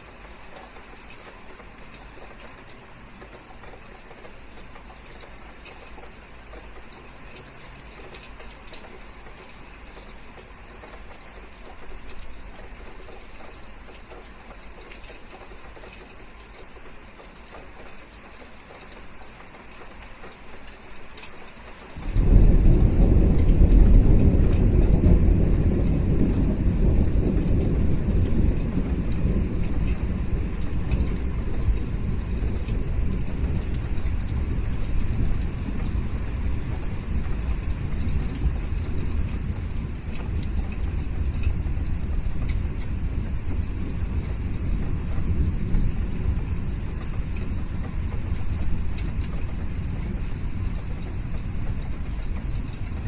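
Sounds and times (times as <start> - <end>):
steady rain falling: 0.0 - 53.0
deep rumble of thunder: 22.0 - 53.0.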